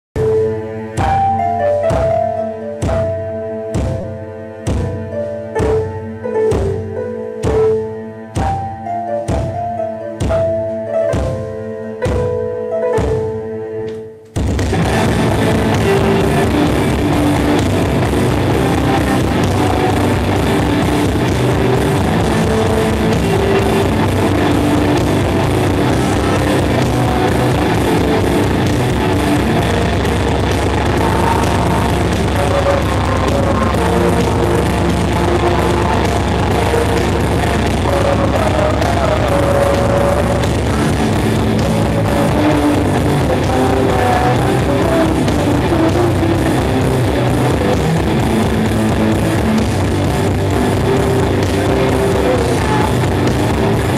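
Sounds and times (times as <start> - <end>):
electric guitars playing melody: 0.2 - 53.9
very fast drumming: 14.3 - 53.9.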